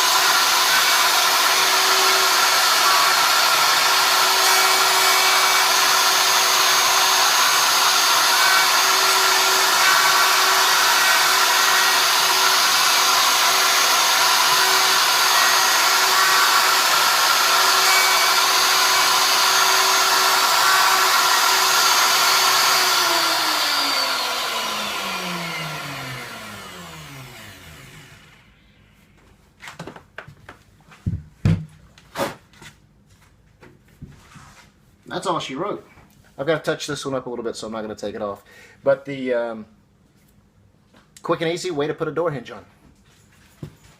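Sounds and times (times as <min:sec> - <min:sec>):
electric router whining: 0:00.0 - 0:28.7.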